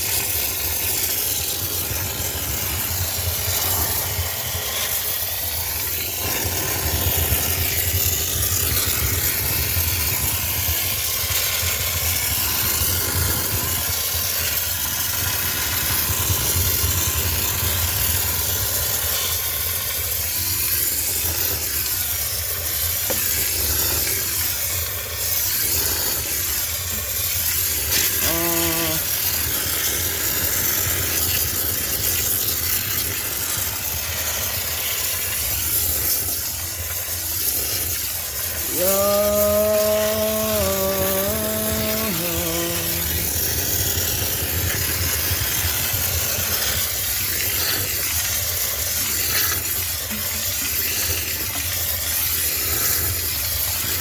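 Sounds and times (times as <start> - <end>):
steam cleaner hissing: 0.0 - 54.0
machine humming: 38.7 - 43.9.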